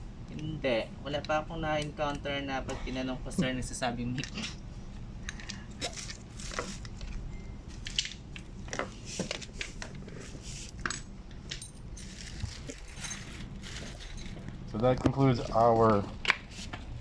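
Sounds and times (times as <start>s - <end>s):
low hum: 0.0s - 17.0s
small hard objects clinking: 10.8s - 14.6s.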